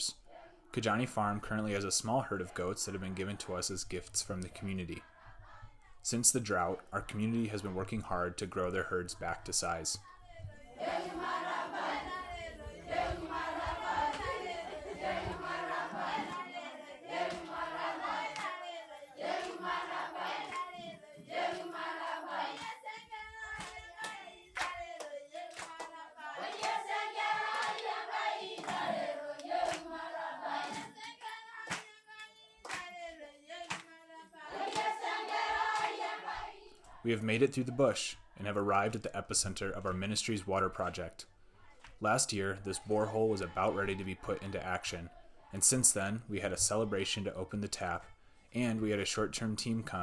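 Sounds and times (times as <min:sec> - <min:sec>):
group of voices singing: 0:00.0 - 0:39.0, 0:41.6 - 0:50.0
rhythmic hand clapping: 0:10.8 - 0:36.9.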